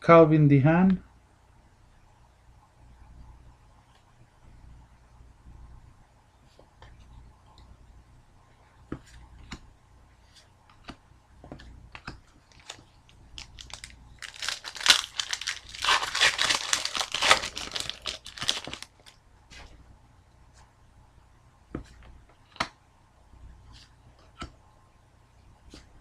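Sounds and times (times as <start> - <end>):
card packaging crinkling and tearing: 12.4 - 19.1.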